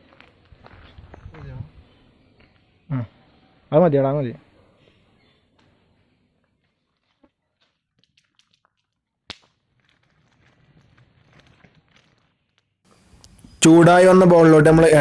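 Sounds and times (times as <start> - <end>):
wood fire crackling and popping: 7.6 - 13.4.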